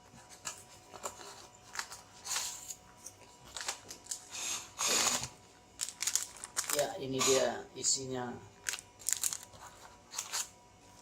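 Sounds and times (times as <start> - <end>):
packaging rustling: 4.9 - 7.2, 8.6 - 10.5.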